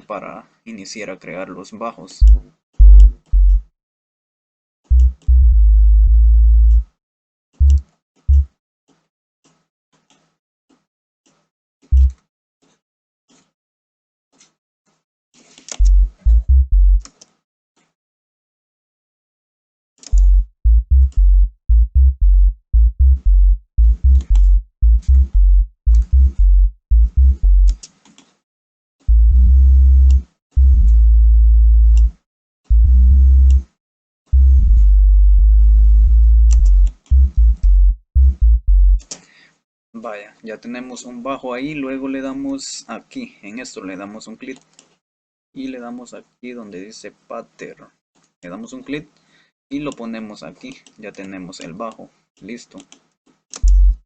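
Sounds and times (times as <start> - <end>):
synthesized sub-bass notes: 2.2 - 3.7, 4.9 - 6.9, 7.6 - 8.5, 11.9 - 12.2, 15.8 - 17.1, 20.1 - 27.8, 29.1 - 33.6, 34.3 - 39.0, 53.6 - 54.0.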